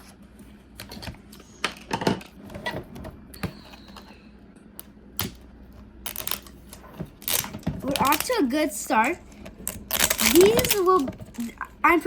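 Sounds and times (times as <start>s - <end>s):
plastic packaging crinkling: 7.2s - 8.4s, 9.6s - 11.7s.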